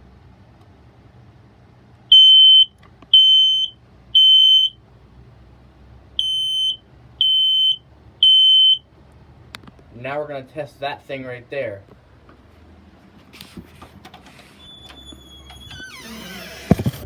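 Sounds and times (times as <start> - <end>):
smoke alarm high-pitched beeps: 2.1 - 4.8, 6.2 - 8.8.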